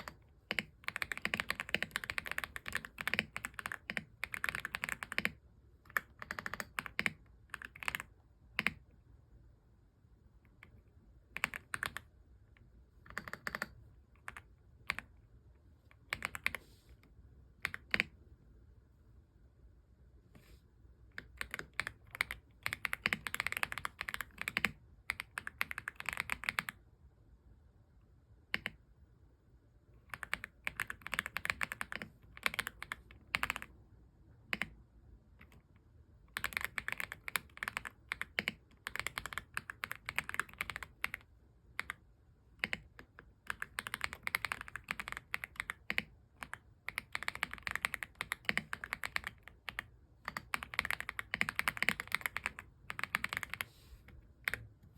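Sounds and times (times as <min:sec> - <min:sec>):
mechanical keyboard typing: 0:00.0 - 0:08.8, 0:10.6 - 0:12.1, 0:13.0 - 0:15.1, 0:16.0 - 0:16.6, 0:17.6 - 0:18.2, 0:21.2 - 0:26.8, 0:28.5 - 0:28.8, 0:30.0 - 0:33.7, 0:36.3 - 0:42.0, 0:42.6 - 0:53.7, 0:54.4 - 0:54.7.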